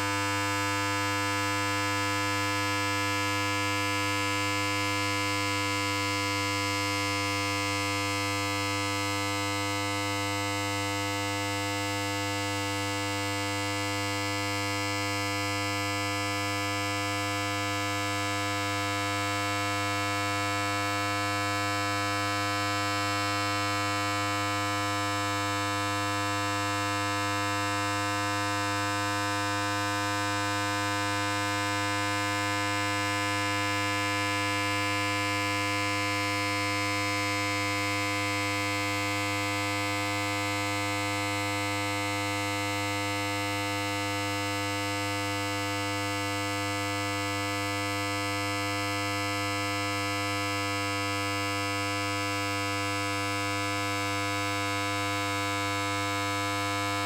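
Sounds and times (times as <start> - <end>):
electric hair clipper buzzing: 52.7 - 57.0.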